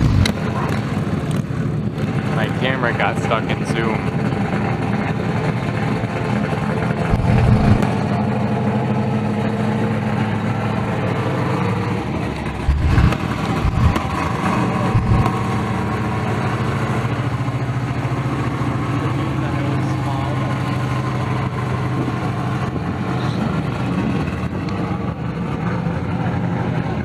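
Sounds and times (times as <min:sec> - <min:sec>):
race car engine idling: 0:00.0 - 0:27.0.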